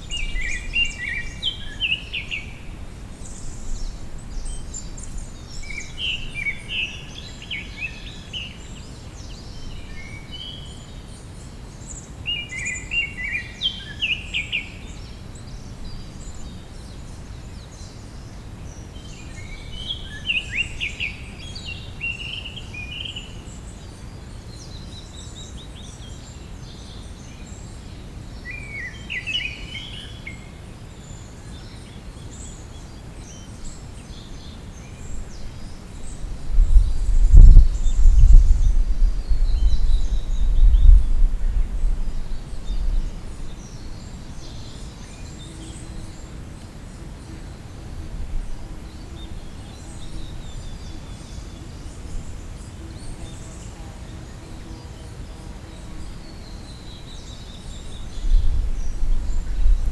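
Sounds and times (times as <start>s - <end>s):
songbird twittering: 0.0s - 11.1s, 31.3s - 46.3s
steady low rumble: 35.5s - 43.6s.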